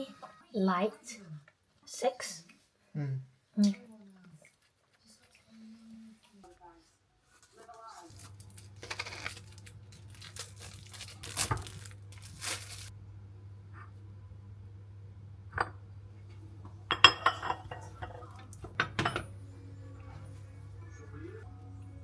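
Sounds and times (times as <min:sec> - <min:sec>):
plastic packaging crinkling and tearing: 0:07.4 - 0:12.9
steady low hum: 0:11.7 - 0:22.0.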